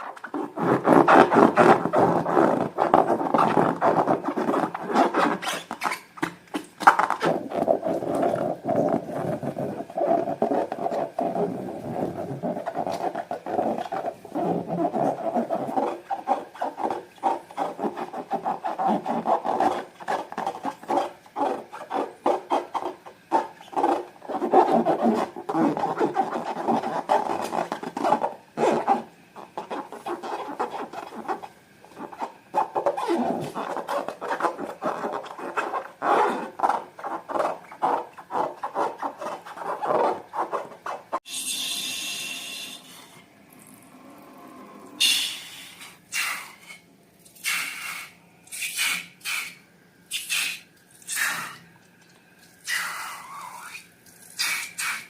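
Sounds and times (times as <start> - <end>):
rubbery squeaking and rubbing: 0.0 - 41.3.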